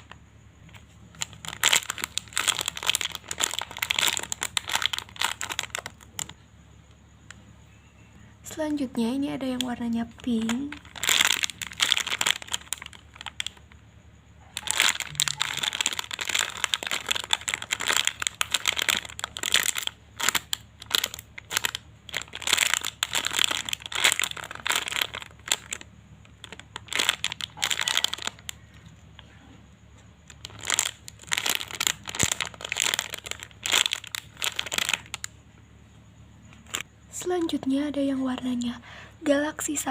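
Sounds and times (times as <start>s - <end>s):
plastic wrapping crinkling: 0.0s - 6.4s, 8.6s - 13.7s, 14.5s - 28.9s, 30.2s - 35.3s, 36.5s - 36.9s.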